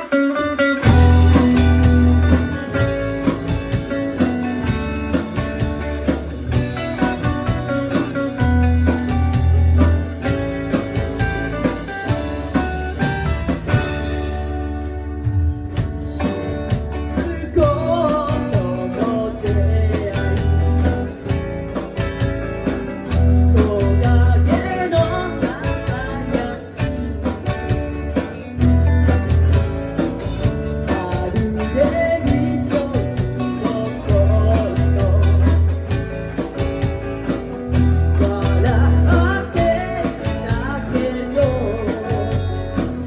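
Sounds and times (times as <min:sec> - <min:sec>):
person singing: 0:00.0 - 0:05.0, 0:15.4 - 0:21.4, 0:23.2 - 0:28.9, 0:30.7 - 0:35.8, 0:38.0 - 0:43.0
live band playing: 0:00.0 - 0:43.0.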